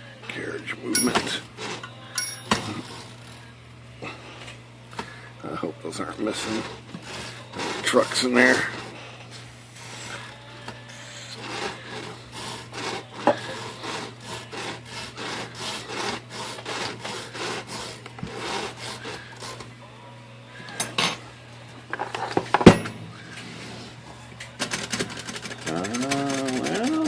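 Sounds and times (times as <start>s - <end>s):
typewriter carriage scraping: 0.8s - 3.4s, 6.0s - 9.0s, 9.8s - 19.7s, 24.6s - 27.0s.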